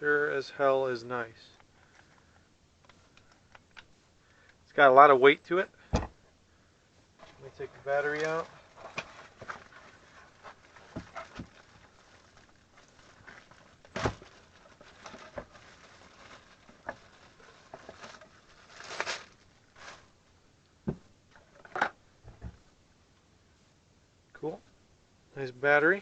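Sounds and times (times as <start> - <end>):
short rustle: 7.2 - 20.2.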